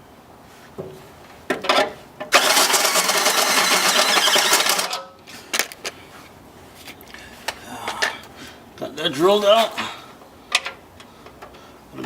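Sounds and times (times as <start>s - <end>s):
power drill grinding through metal: 2.3s - 5.0s.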